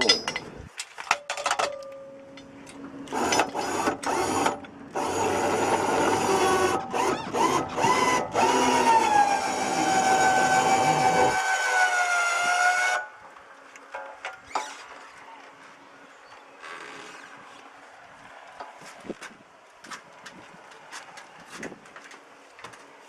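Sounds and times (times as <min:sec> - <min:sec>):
electric motor whining: 0:03.0 - 0:13.0.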